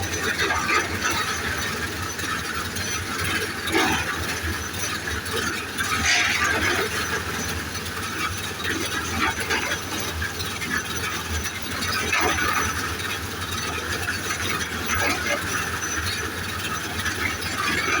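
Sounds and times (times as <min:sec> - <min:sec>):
low machinery rumble: 0:00.0 - 0:13.6.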